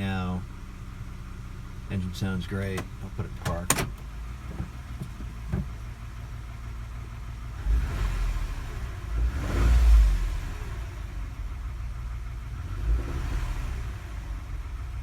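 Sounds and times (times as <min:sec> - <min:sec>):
car engine idling and revving: 0:00.0 - 0:15.0.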